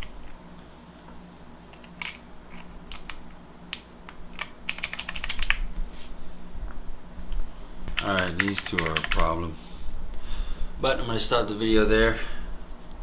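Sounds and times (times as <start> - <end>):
mechanical keyboard keys clicking: 4.4 - 5.6, 8.0 - 9.3.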